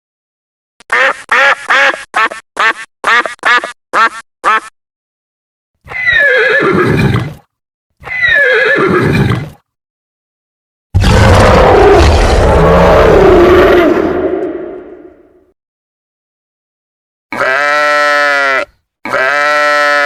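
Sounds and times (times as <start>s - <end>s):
horse neighing: 5.9s - 7.4s, 8.0s - 9.5s.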